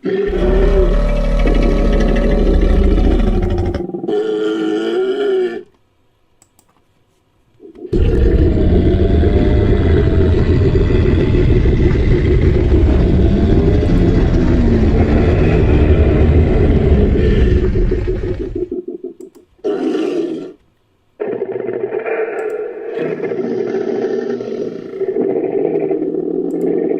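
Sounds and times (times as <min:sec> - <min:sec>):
deep rumbling creature roar: 0:00.0 - 0:05.7, 0:07.9 - 0:18.7, 0:21.2 - 0:26.9
short pitched creature call: 0:00.0 - 0:05.7.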